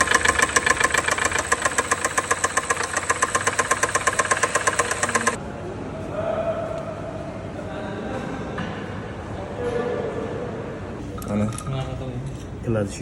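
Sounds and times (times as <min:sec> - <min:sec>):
engine running: 0:00.0 - 0:05.4
rapid metallic engine knock: 0:00.0 - 0:05.4.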